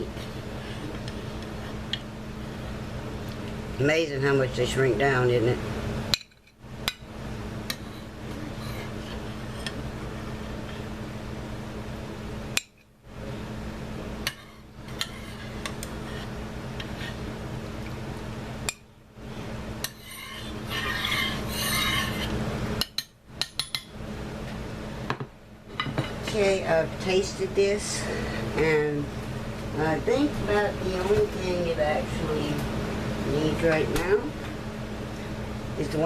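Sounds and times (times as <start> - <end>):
stirring pot: 14.3 - 17.3, 19.8 - 23.6
utensils clinking and scraping: 19.9 - 22.3.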